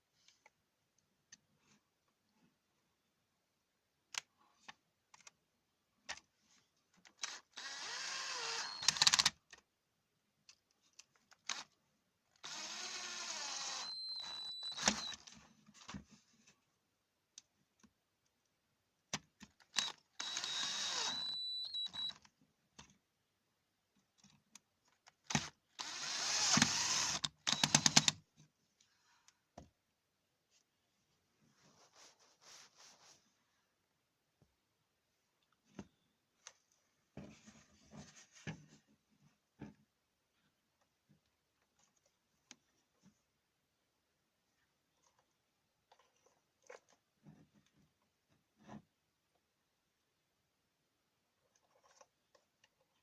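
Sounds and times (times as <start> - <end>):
small electric motor tool: 7.2 - 9.3, 12.4 - 15.2, 19.8 - 22.1, 25.3 - 28.1.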